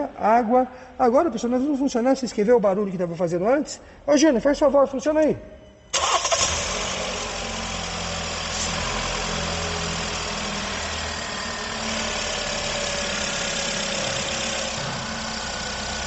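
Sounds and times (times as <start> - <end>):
car engine idling: 5.9 - 16.0.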